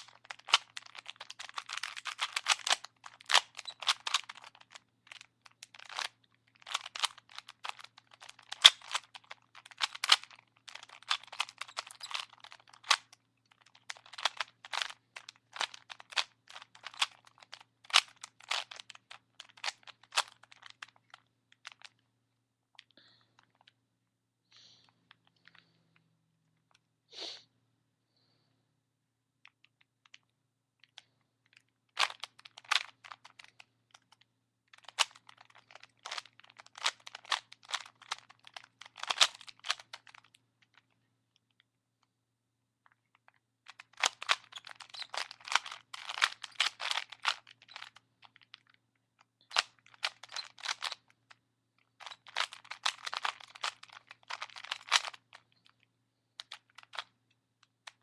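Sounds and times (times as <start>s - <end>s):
puzzle cube clicking: 0.1s - 22.0s, 32.0s - 34.1s, 34.8s - 40.3s, 43.7s - 48.0s, 49.5s - 51.1s, 52.0s - 55.3s.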